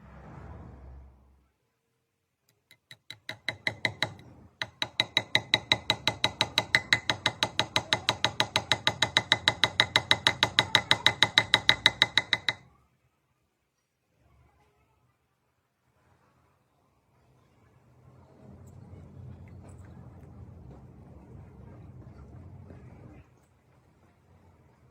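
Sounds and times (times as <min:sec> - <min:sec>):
ratchet clicking: 0:02.7 - 0:12.6.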